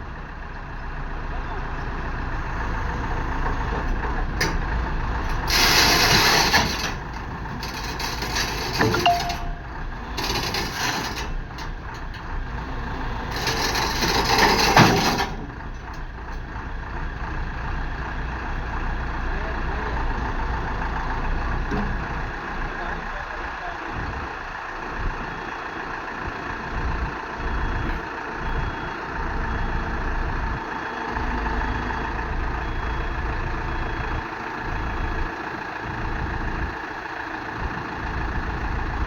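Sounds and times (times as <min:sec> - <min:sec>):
excavator running: 0:00.0 - 0:39.0
rushing scraping noise: 0:05.4 - 0:11.3.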